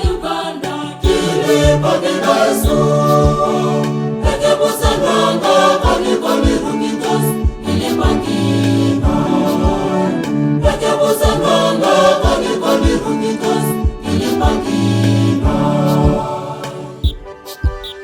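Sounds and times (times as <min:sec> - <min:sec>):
choir singing in harmony: 0:00.0 - 0:18.0
steady low beat: 0:01.0 - 0:05.1, 0:07.4 - 0:10.0, 0:17.0 - 0:18.0.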